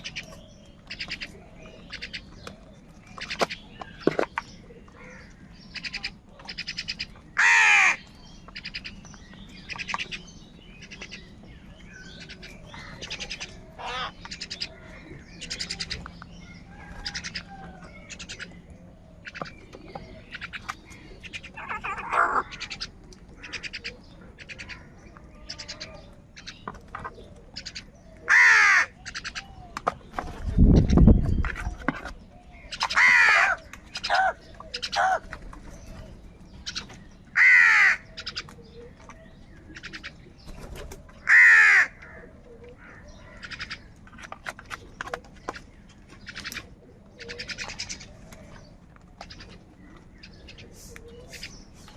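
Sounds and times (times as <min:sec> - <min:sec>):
crows cawing: 0:05.0 - 0:08.9, 0:12.2 - 0:15.8, 0:20.4 - 0:24.9, 0:27.6 - 0:29.4, 0:32.7 - 0:35.4, 0:36.7 - 0:38.4, 0:41.2 - 0:43.8.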